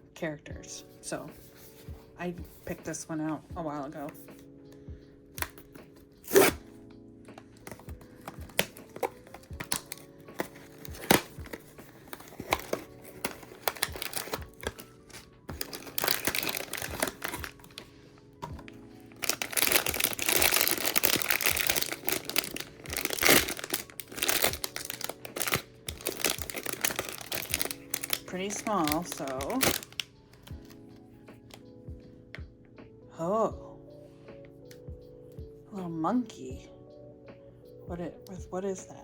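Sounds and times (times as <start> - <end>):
soft background music: 0.0 - 39.0
packaging clicks and tears: 5.4 - 6.7, 7.6 - 17.9, 18.5 - 30.8
wrapping crinkling and tearing: 5.4 - 6.7, 7.6 - 17.9, 18.5 - 30.8.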